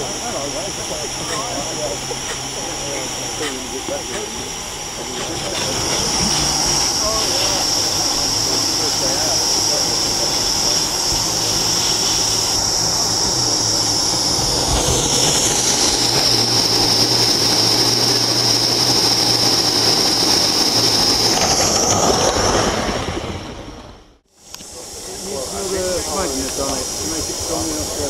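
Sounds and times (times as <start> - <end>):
model steam locomotive hissing: 0.0 - 28.0.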